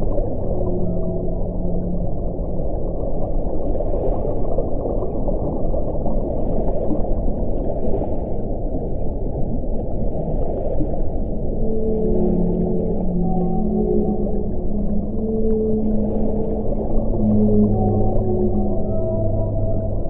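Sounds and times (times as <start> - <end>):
whale calls: 0.0 - 4.4, 11.2 - 20.0
underwater low wash: 0.0 - 20.0.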